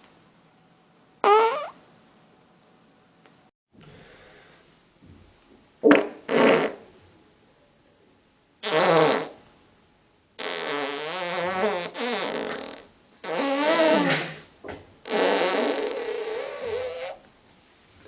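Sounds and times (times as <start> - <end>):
farts: 1.2 - 1.8, 5.8 - 6.9, 8.6 - 9.4, 10.4 - 17.2.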